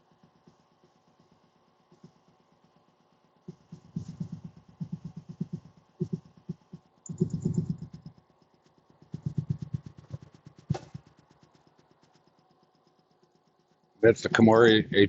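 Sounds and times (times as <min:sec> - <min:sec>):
air compressor chugging: 0:03.5 - 0:12.2.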